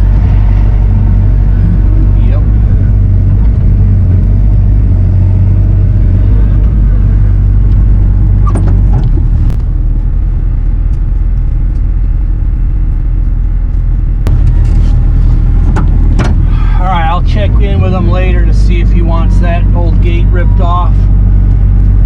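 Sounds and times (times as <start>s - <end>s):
diesel engine running: 0.0s - 22.0s
short knocks: 15.6s - 16.5s.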